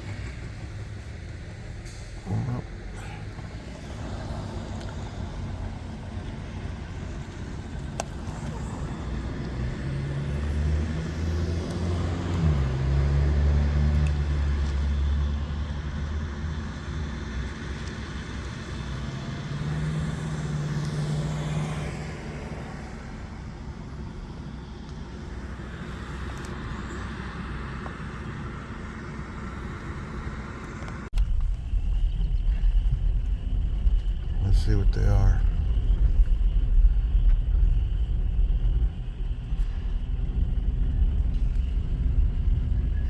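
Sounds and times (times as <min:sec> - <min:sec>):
steady low rumble: 0:00.0 - 0:11.1, 0:22.0 - 0:43.0
engine humming: 0:00.0 - 0:43.0.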